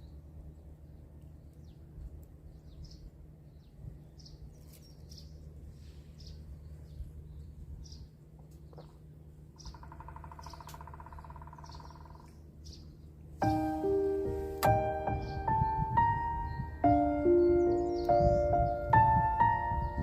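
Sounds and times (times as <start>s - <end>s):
small birds chirping: 0.0s - 20.0s
steady low hum: 5.2s - 20.0s
rapid bird trill: 9.6s - 20.0s.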